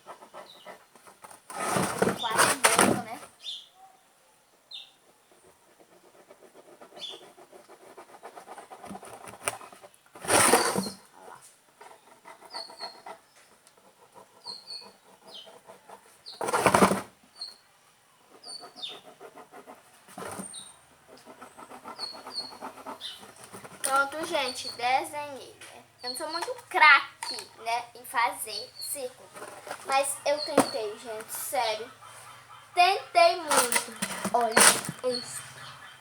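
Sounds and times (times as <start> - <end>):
pen scratching on cardboard: 0.0 - 3.2, 5.0 - 17.5, 18.3 - 35.8
pen squeaks: 6.9 - 7.4, 10.4 - 11.0, 11.9 - 13.2, 21.4 - 24.8, 26.0 - 27.6, 28.5 - 31.8, 33.2 - 35.5
rasping bursts: 18.5 - 35.9.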